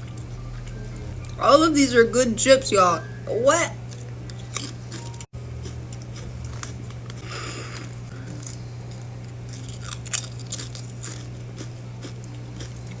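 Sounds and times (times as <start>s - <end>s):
steady low hum: 0.0s - 13.0s
chips crunching: 3.9s - 13.0s
snack bag rustling: 4.0s - 13.0s.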